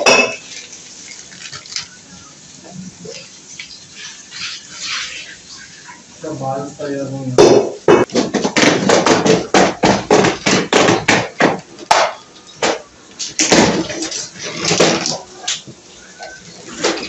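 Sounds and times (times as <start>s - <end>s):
rapid sharp knocks: 7.5s - 12.8s.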